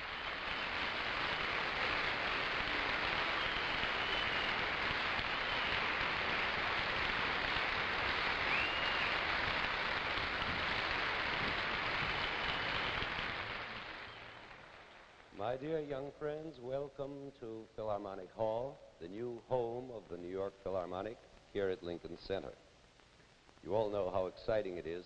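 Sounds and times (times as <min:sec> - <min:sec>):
audience applauding: 0:00.0 - 0:16.0.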